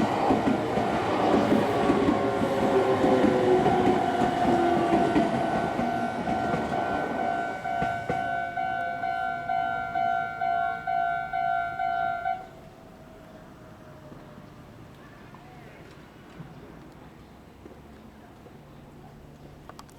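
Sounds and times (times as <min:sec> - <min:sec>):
train wheel and rail noise: 0:00.0 - 0:19.9
level crossing warning bell: 0:04.0 - 0:13.0.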